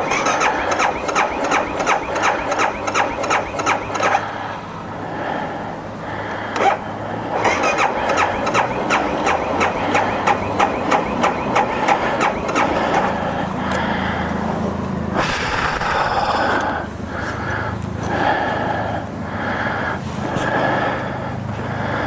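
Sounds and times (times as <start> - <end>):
starter cranking motorcycle engine: 0.0 - 4.2, 6.6 - 13.8
loud burst of noise: 7.3 - 13.4, 15.2 - 16.9.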